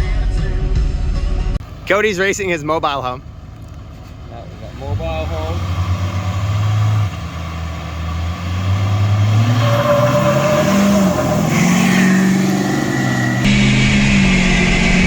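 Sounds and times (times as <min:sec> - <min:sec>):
racing car engine accelerating: 0:04.5 - 0:15.0.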